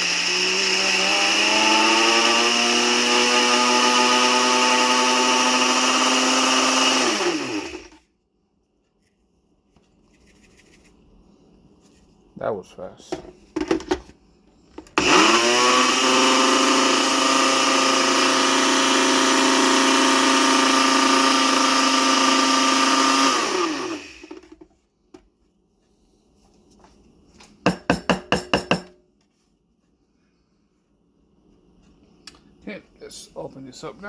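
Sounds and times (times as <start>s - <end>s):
blender motor grinding coffee beans: 0.0s - 8.0s, 14.9s - 24.6s
short loud blender pulses: 0.0s - 8.0s, 15.0s - 24.3s.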